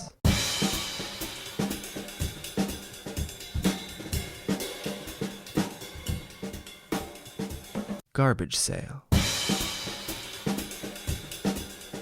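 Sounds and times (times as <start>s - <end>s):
kick drum and snare hits: 0.3s - 7.1s
ringing cymbals and hi-hat: 0.3s - 7.8s, 9.2s - 12.0s.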